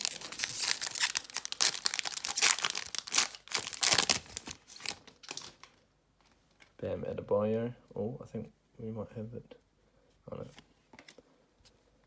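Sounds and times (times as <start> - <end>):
plastic wrapper tearing and crinkling: 0.0 - 5.8.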